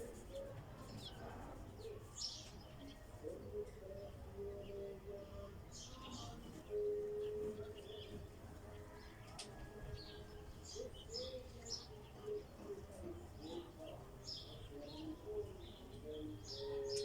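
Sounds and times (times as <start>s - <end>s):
birds chirping: 10.0s - 17.0s.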